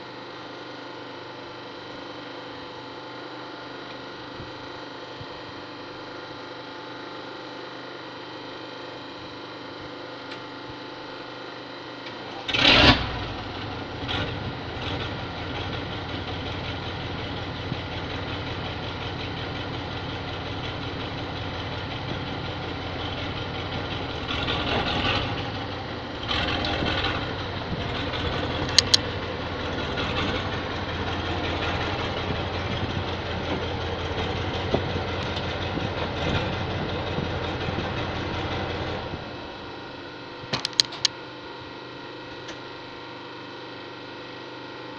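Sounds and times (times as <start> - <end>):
truck engine starting and idling: 12.0 - 40.0, 40.6 - 41.1.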